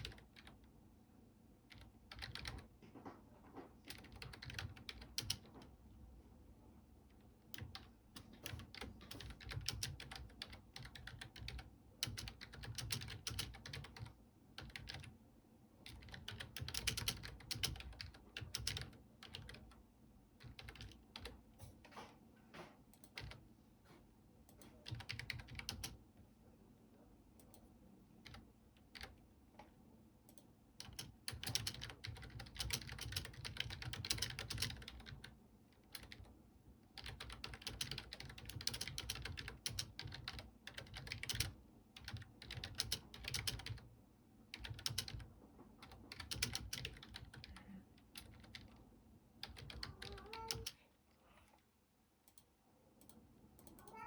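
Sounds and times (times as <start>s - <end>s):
keyboard typing: 0.0s - 0.7s, 1.7s - 3.2s, 3.8s - 5.8s, 7.1s - 15.1s, 15.8s - 19.8s, 20.4s - 21.7s, 23.0s - 23.4s, 24.5s - 26.0s, 27.4s - 29.2s, 30.3s - 36.3s, 36.9s - 43.9s, 44.5s - 48.8s, 49.4s - 50.8s.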